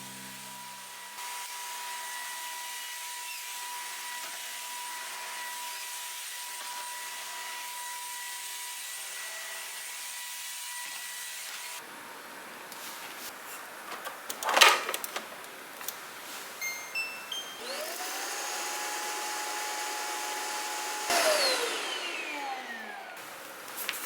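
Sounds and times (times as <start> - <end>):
stick vacuum cleaner running: 17.6 - 24.0.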